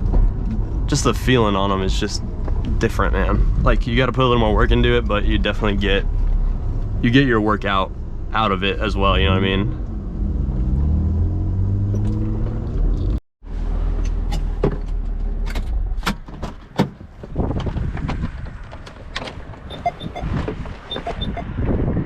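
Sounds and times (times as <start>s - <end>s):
car engine revving: 0.0s - 14.0s
low engine hum: 0.0s - 22.0s.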